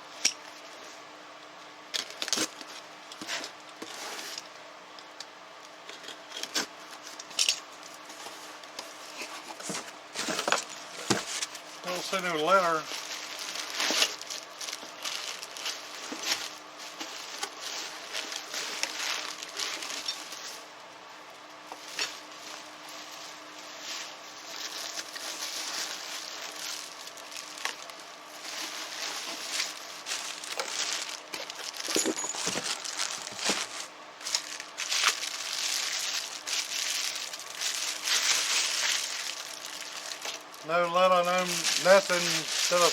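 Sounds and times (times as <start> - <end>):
faint steady hum: 0.0 - 42.9
packing material crinkling: 10.2 - 20.6, 21.7 - 42.9.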